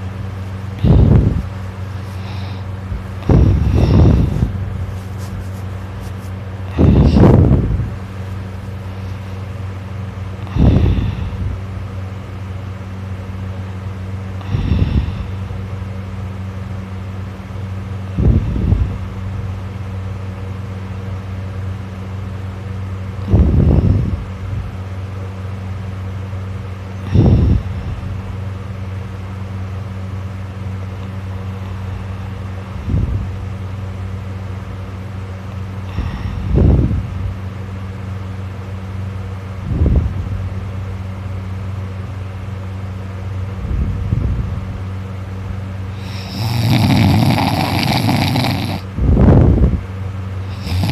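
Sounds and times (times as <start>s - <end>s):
steady low hum: 0.0s - 50.9s
person snoring loudly: 0.8s - 4.6s, 6.6s - 7.6s, 10.4s - 11.5s, 14.4s - 15.4s, 46.0s - 48.9s, 50.4s - 50.9s.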